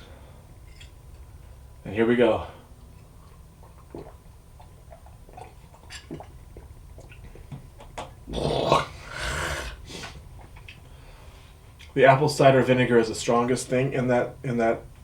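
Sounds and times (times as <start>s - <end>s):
man groaning: 8.3s - 9.8s
man sipping: 8.3s - 11.2s
harsh breath out: 8.9s - 10.2s.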